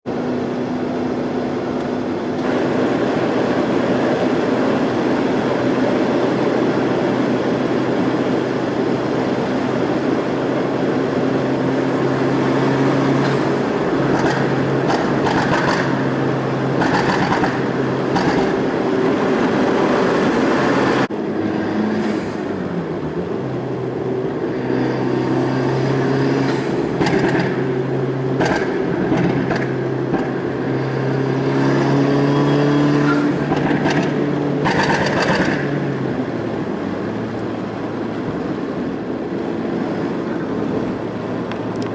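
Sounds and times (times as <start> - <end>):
car engine: 0.0 - 41.9
road noise: 0.0 - 41.9
exhaust pops and crackles: 14.1 - 16.0, 16.8 - 18.6, 28.4 - 30.4, 33.5 - 35.7.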